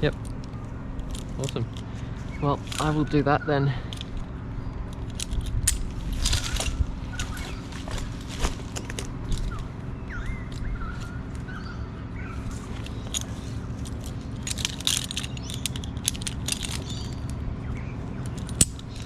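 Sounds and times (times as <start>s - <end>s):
clicks and rustles: 0.0s - 3.2s, 3.8s - 9.8s, 12.5s - 17.4s, 18.1s - 19.0s
faint steady hum: 0.0s - 19.0s
wind rumble on microphone: 2.3s - 13.7s
bird chirps: 9.3s - 13.7s, 16.7s - 19.0s.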